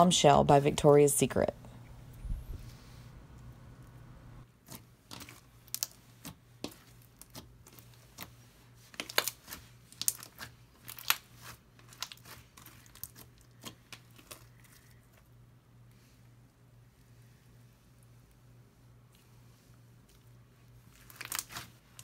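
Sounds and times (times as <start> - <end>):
bead slime crackling and popping: 4.6 - 8.3, 8.9 - 15.2, 20.9 - 22.0.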